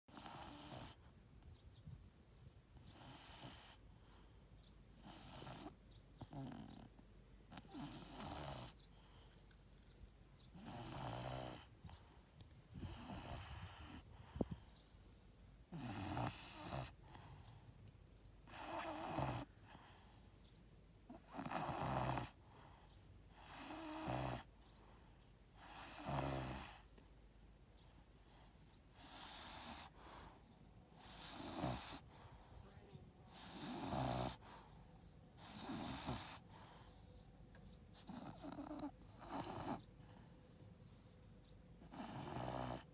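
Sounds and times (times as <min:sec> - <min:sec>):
dog snoring: 0:00.1 - 0:01.1, 0:02.7 - 0:04.2, 0:05.0 - 0:09.3, 0:10.4 - 0:14.7, 0:15.7 - 0:17.7, 0:18.4 - 0:20.3, 0:21.1 - 0:24.6, 0:25.6 - 0:27.1, 0:27.8 - 0:32.6, 0:33.3 - 0:40.8, 0:41.8 - 0:42.9.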